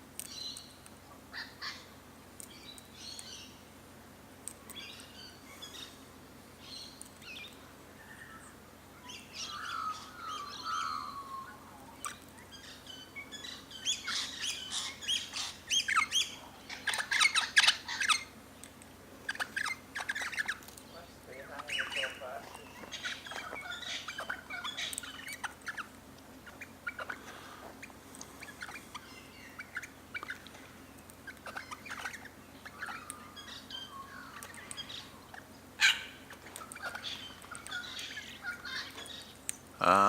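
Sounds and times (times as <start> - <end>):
birds chattering and squawking: 0.1 - 40.0
birds chirping: 0.1 - 40.0
falling whistled bird notes: 9.2 - 12.1.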